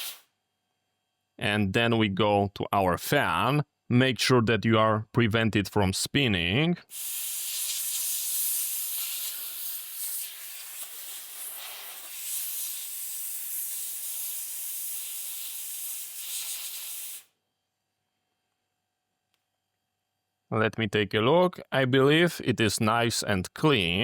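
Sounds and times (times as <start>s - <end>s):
compressed air hissing: 0.0s - 0.2s, 6.8s - 17.3s.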